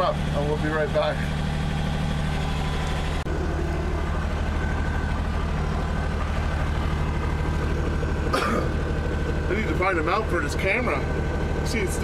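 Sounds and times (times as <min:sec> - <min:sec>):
diesel tractor engine idling: 0:00.0 - 0:12.0.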